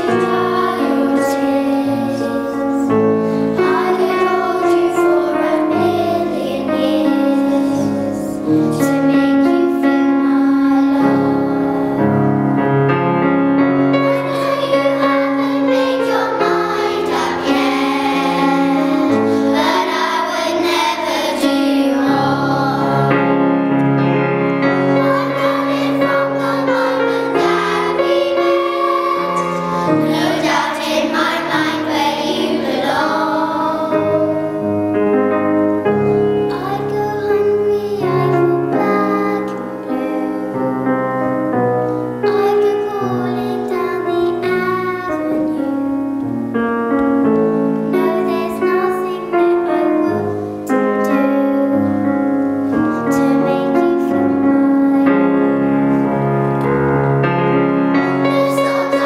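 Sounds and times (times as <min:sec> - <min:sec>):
children singing: 0:00.0 - 0:12.3, 0:13.9 - 0:23.3, 0:24.6 - 0:34.8, 0:36.5 - 0:40.6, 0:48.0 - 0:50.3, 0:53.0 - 0:55.2, 0:58.0 - 0:59.0
piano accompaniment: 0:00.0 - 0:59.0.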